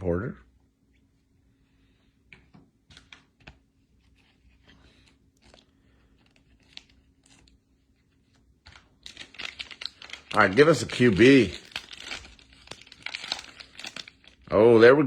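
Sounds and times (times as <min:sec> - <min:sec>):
foil wrapper crinkling: 0:04.6 - 0:14.6.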